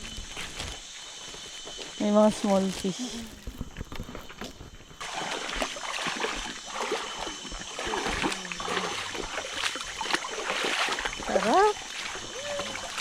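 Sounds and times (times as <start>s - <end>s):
stream water rushing and splashing: 5.0s - 13.0s.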